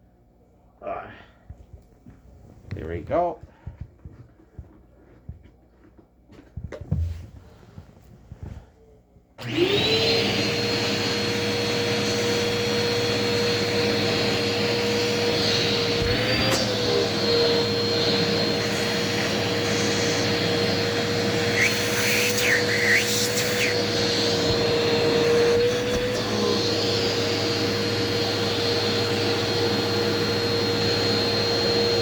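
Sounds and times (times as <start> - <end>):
vacuum cleaner motor whine: 9.4 - 32.0
short whistling chirps: 21.4 - 23.8.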